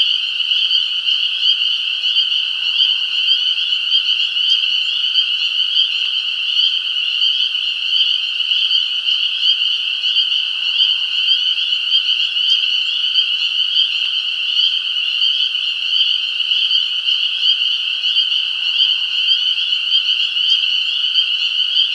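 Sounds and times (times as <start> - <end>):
chorus of frogs trilling: 0.0 - 21.9.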